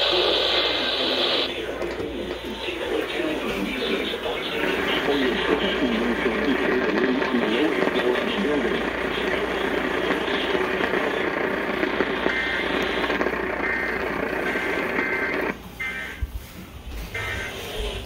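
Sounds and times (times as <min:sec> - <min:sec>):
radio static: 0:00.0 - 0:18.0
warbling data tone bursts: 0:10.0 - 0:16.2.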